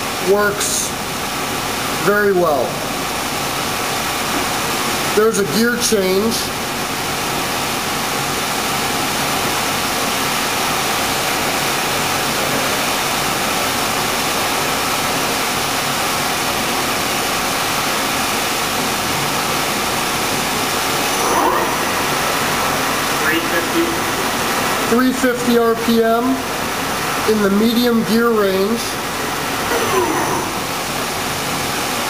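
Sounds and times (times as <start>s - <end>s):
lathe spindle running: 19.0s - 27.6s.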